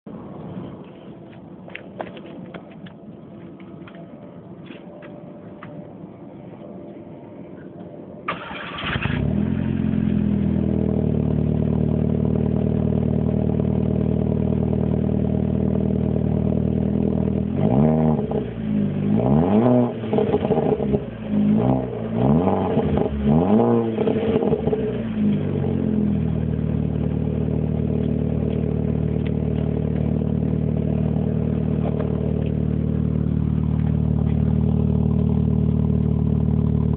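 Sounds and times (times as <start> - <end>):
car starter cranking: 8.3 - 9.4
car engine idling and revving: 8.3 - 36.9.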